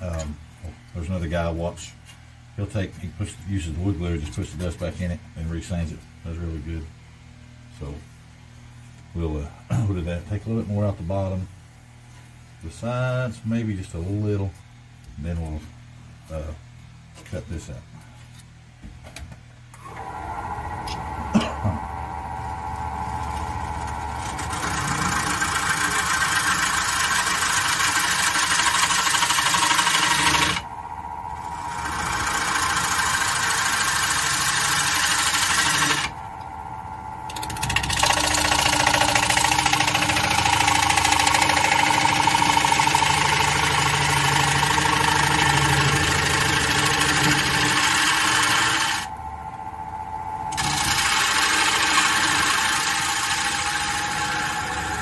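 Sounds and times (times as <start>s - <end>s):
lathe motor whine: 19.7s - 55.0s
gouge cutting wood: 23.7s - 30.6s, 31.4s - 36.1s, 37.3s - 49.1s, 50.5s - 55.0s.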